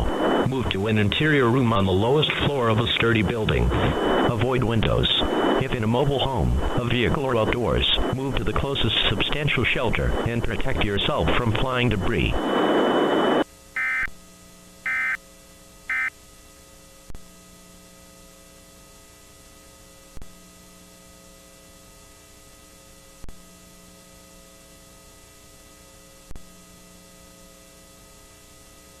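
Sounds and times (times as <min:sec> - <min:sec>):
steady hum: 0:00.0 - 0:29.0
warbling data bursts: 0:14.9 - 0:15.2.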